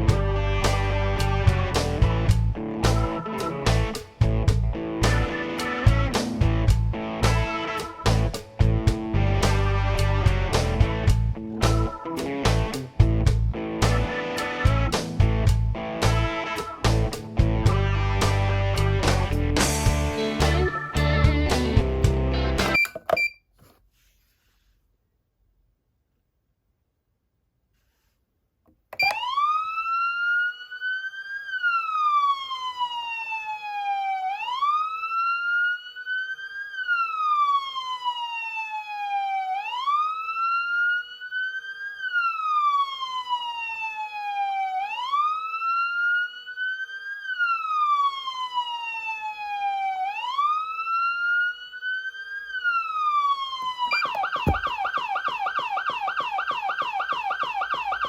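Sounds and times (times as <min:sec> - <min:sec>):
siren yelp: 0:00.1 - 0:04.0, 0:05.1 - 0:06.5, 0:07.4 - 0:08.6, 0:11.6 - 0:12.4, 0:13.8 - 0:15.2, 0:16.2 - 0:16.9, 0:20.2 - 0:21.5, 0:29.0 - 0:58.0
electronic siren wail: 0:03.0 - 0:04.0, 0:05.2 - 0:06.3, 0:07.5 - 0:08.5, 0:16.3 - 0:16.8, 0:29.0 - 0:58.0.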